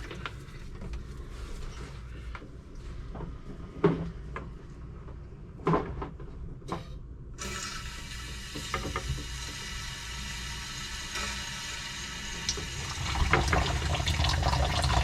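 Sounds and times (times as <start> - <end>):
drain jetter spraying water: 10.2 - 15.0.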